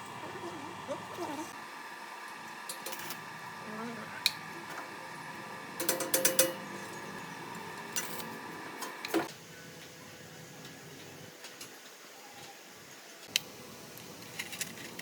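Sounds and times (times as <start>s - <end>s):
light metallic clicks and clinks: 5.8s - 6.7s.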